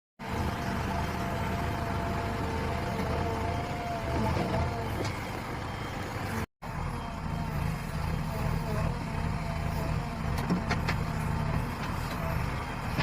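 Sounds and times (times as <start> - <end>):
diesel engine running: 0.2 - 13.0.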